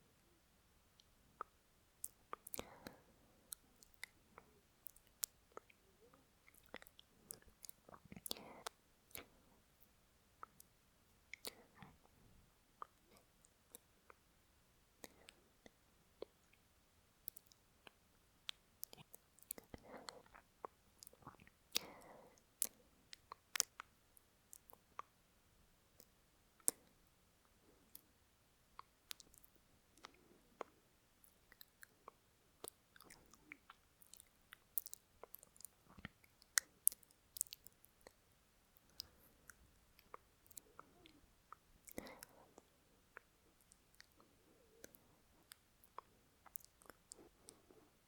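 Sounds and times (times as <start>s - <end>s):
wet mouth clicks and lip smacks: 1.0s - 5.8s, 6.4s - 9.4s, 11.3s - 12.1s, 17.2s - 23.9s, 24.5s - 25.1s, 25.9s - 26.9s, 28.8s - 38.2s, 38.8s - 47.8s.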